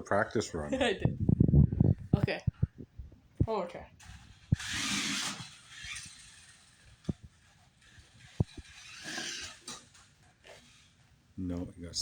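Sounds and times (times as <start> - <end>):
toy car wheels whirring: 4.0 - 11.0.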